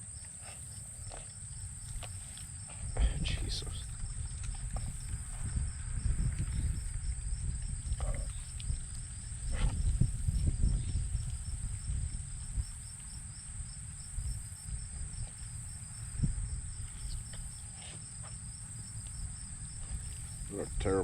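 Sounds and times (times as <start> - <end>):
constant high buzz: 0.0 - 21.0
insects chirping: 0.0 - 21.0
low rumbling noise: 2.7 - 12.7.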